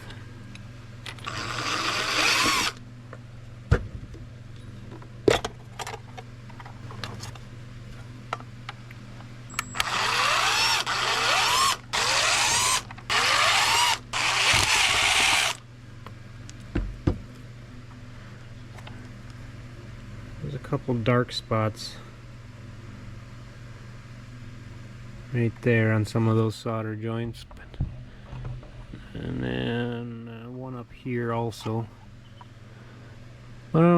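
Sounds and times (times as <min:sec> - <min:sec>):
cordless power driver whirring: 0:01.1 - 0:02.8, 0:09.6 - 0:15.6.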